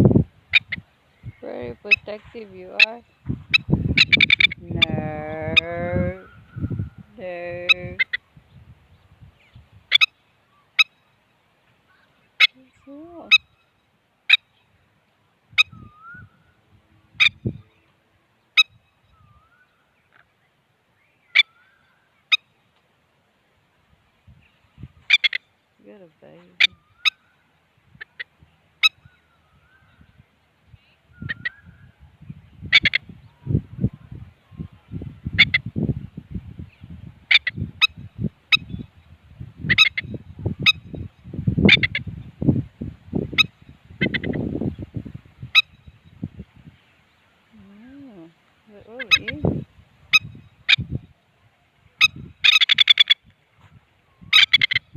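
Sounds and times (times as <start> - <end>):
bird alarm calls: 0.5 - 11.2, 11.9 - 14.8, 15.5 - 20.3, 21.0 - 22.6, 24.4 - 25.6, 26.2 - 33.6, 35.2 - 35.7, 36.6 - 38.9, 39.6 - 42.2, 43.3 - 46.8, 48.7 - 51.2, 52.0 - 53.3, 54.2 - 54.9.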